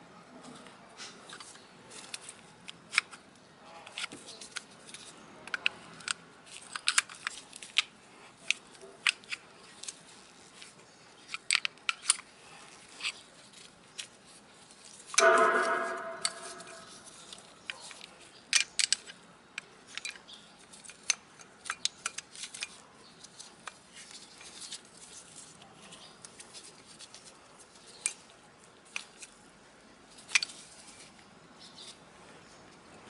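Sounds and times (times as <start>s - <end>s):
hand tools clicking and tapping: 15.2s - 17.0s
metallic clang: 15.2s - 17.1s.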